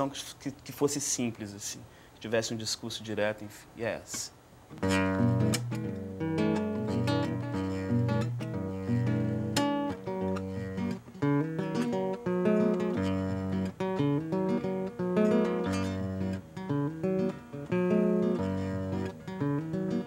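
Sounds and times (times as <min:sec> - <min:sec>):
acoustic guitar chords: 0:04.7 - 0:20.0.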